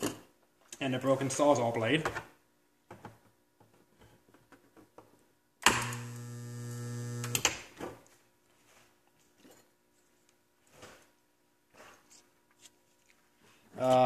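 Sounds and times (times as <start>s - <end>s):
welder electrical hum: 5.6s - 7.7s
welding arc crackle: 5.7s - 7.5s.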